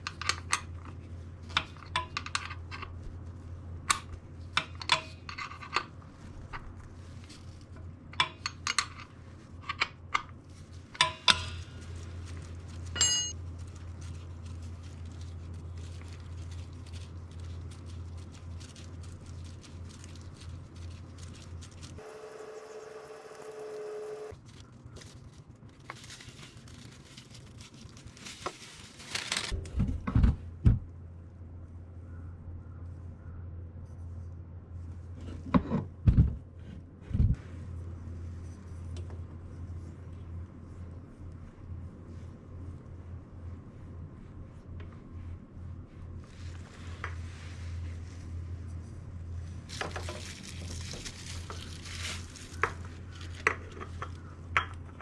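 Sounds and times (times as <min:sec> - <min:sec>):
steady low hum: 0:00.0 - 0:26.2, 0:29.6 - 0:55.0
rustling: 0:06.0 - 0:08.0, 0:10.3 - 0:29.6, 0:37.4 - 0:54.5
metallic clinks of tools: 0:13.0 - 0:13.3
mid-pitched whine: 0:22.0 - 0:24.4.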